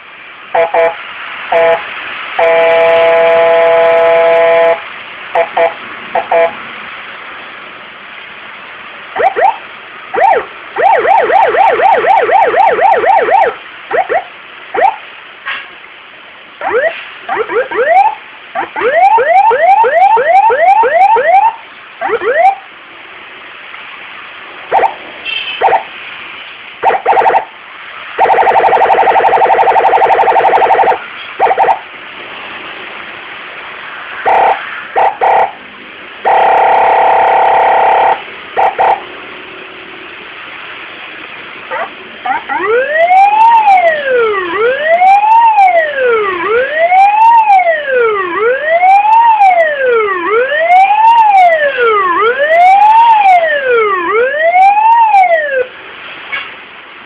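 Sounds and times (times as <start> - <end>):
short siren blasts: 9.2 - 9.6, 16.6 - 22.6, 25.6 - 25.9, 28.2 - 31.8, 36.2 - 39.0
electronic police siren: 9.2 - 15.0, 16.6 - 22.6, 24.7 - 25.0, 25.6 - 25.9, 26.8 - 27.5, 28.2 - 31.8, 36.2 - 39.0, 41.7 - 55.7.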